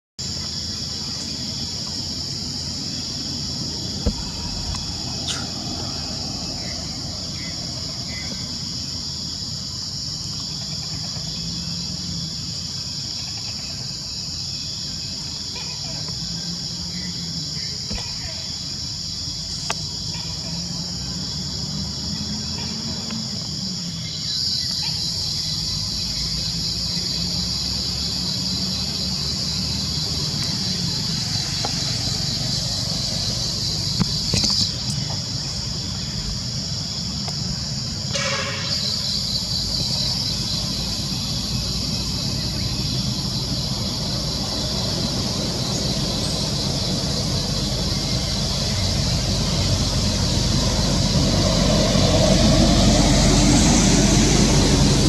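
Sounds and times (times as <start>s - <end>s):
high-pitched insect drone: 0.2s - 55.0s
passing vehicles rumble: 0.2s - 55.0s.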